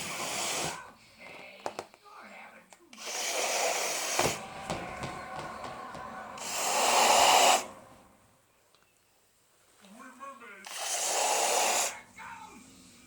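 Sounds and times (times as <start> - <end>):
air hissing from balloon: 0.0 - 1.2, 3.0 - 7.9, 10.6 - 12.0.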